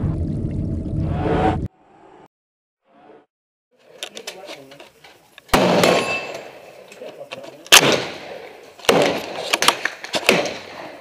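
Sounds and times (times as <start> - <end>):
rifle shots: 5.5 - 6.3, 7.7 - 11.0.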